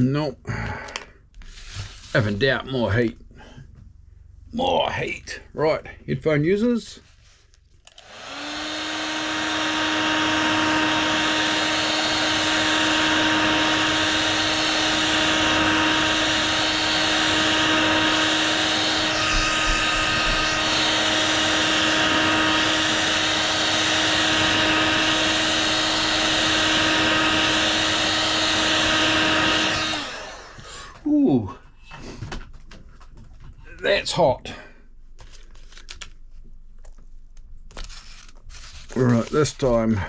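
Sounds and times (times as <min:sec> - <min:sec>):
heat gun air rushing: 0:07.9 - 0:31.1
heat gun motor hum: 0:07.9 - 0:31.1.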